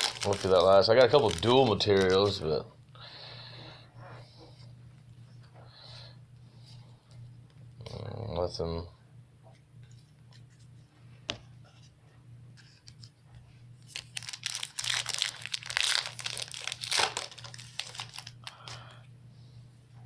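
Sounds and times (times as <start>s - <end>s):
foil wrapper tearing and crinkling: 0.0s - 2.4s, 13.9s - 18.8s.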